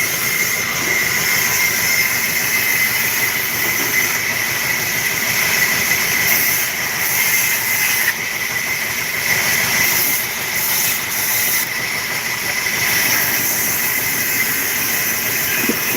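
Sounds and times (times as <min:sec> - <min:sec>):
woodworking machine whine: 0:00.0 - 0:15.9.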